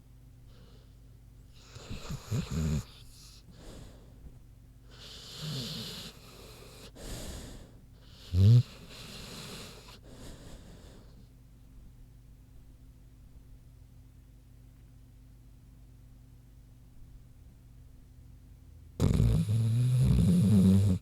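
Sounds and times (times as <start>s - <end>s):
dog snoring: 1.5s - 4.0s, 4.9s - 11.2s, 19.0s - 21.0s
dog snorting: 1.6s - 4.0s, 4.9s - 10.9s, 19.0s - 21.0s.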